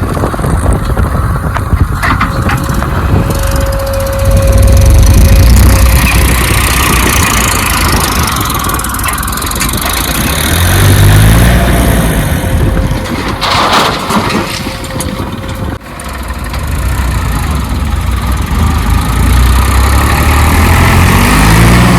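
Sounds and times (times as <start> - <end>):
heavy diesel engine revving: 0.0 - 14.1, 15.3 - 21.9.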